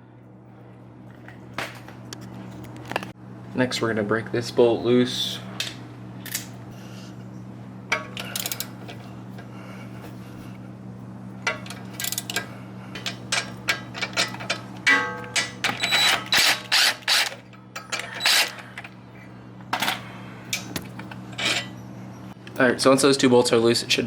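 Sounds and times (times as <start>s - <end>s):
ratchet wrench clicking: 15.4s - 18.5s.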